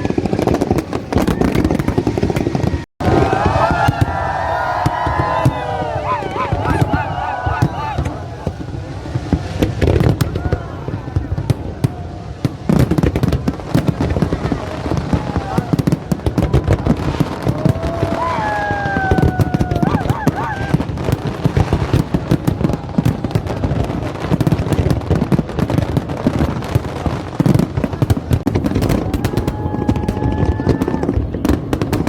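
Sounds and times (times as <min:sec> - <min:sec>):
fireworks whistling: 0:00.0 - 0:11.9
fireworks bangs and crackles: 0:00.0 - 0:32.0.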